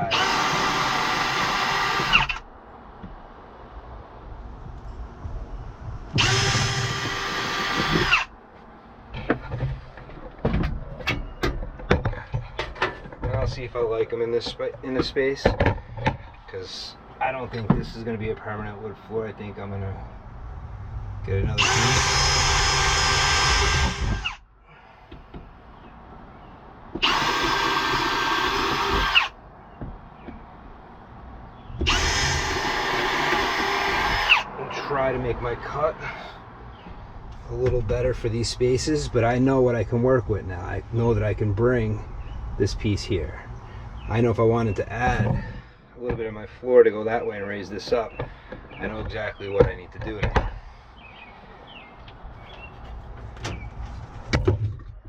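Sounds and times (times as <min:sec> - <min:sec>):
drill boring into wood: 0:00.0 - 0:02.4, 0:06.1 - 0:08.3, 0:21.5 - 0:24.4, 0:27.0 - 0:29.4, 0:31.8 - 0:34.5.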